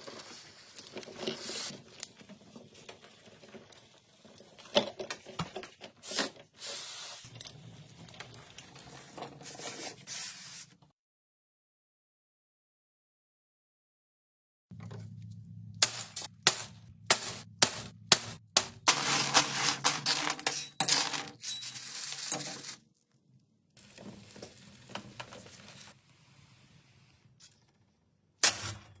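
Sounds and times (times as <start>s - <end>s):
low steady hum: 14.7s - 20.7s
dense clinking and clatter: 17.2s - 22.8s.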